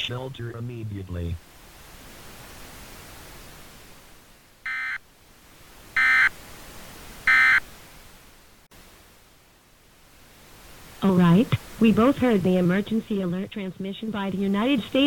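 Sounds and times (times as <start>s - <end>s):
digital data tone bursts: 4.7s - 5.0s, 6.0s - 6.3s, 7.3s - 7.6s.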